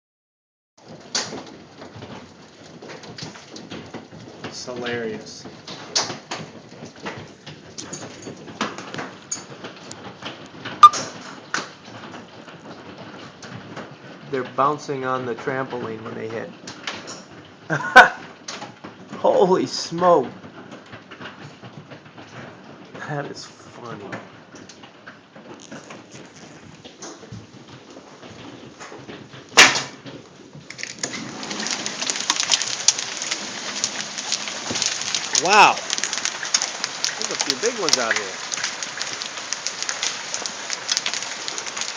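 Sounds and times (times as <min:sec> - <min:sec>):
hailstones hitting a trampoline: 0:00.8 - 0:41.9
loud ringing hail hit: 0:30.7 - 0:41.9.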